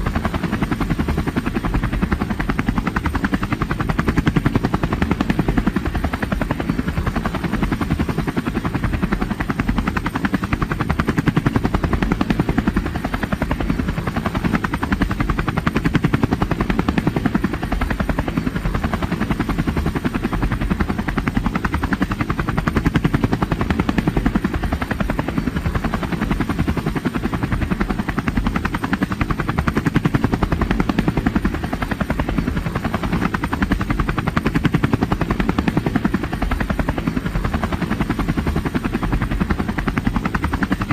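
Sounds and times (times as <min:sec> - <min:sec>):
helicopter rotor beating: 0:00.0 - 0:40.9.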